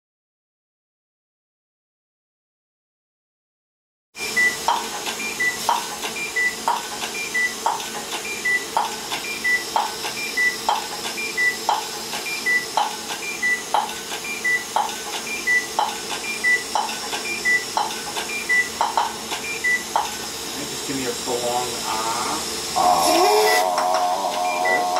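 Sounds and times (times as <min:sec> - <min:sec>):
short high beeps: 0:23.4 - 0:23.7, 0:24.4 - 0:24.9.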